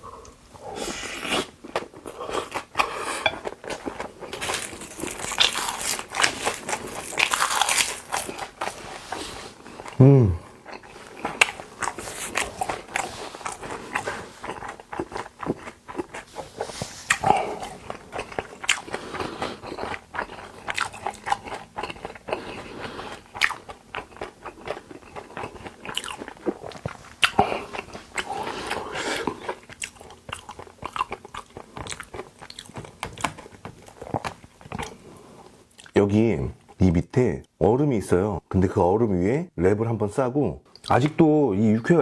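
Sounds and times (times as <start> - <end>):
wet chewing and mouth smacks: 10.6 - 36.0.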